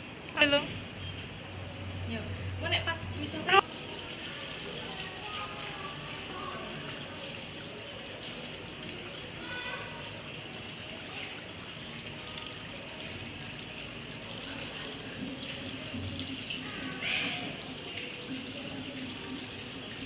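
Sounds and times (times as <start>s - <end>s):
water running from a tap: 3.3s - 20.0s.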